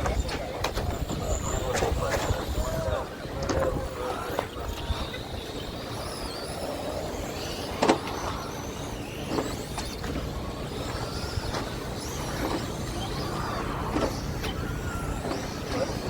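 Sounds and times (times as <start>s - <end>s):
rc truck motors whining: 0.0s - 16.0s
tyre and road noise: 0.0s - 16.0s.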